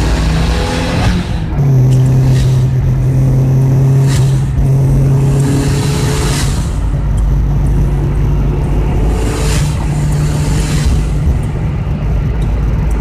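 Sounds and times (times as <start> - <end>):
car engine droning at speed: 0.0 - 13.0
whooshes: 3.9 - 11.8.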